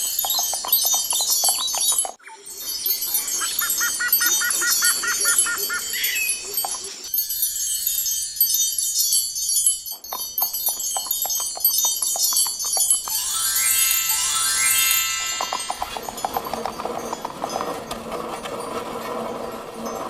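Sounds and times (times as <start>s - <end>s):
magical tinkling chimes: 0.0s - 17.8s
rising shimmering chime sweep: 13.1s - 16.8s.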